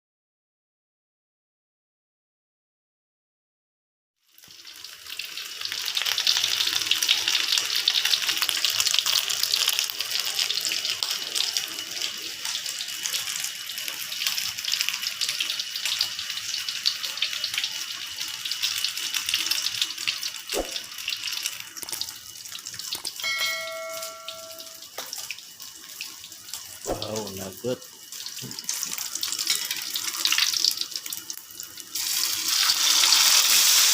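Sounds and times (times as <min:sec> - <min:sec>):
eggs sizzling in oil: 0:04.2 - 0:33.9
steady tone: 0:23.2 - 0:24.9.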